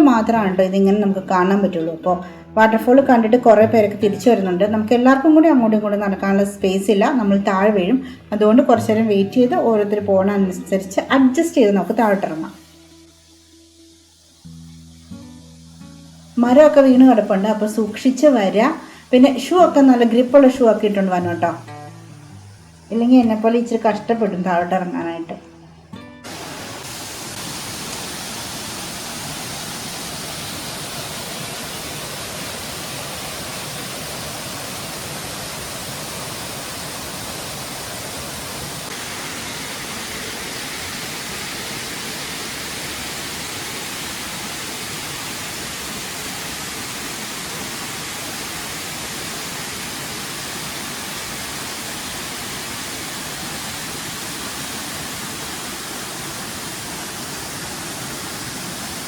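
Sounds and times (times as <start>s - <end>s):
waterfall rushing: 7.1s - 24.2s, 25.7s - 59.0s.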